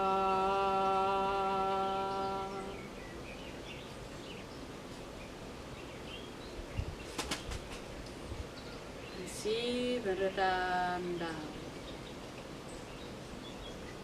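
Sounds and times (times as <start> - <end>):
long voiced tone: 0.0 - 2.8.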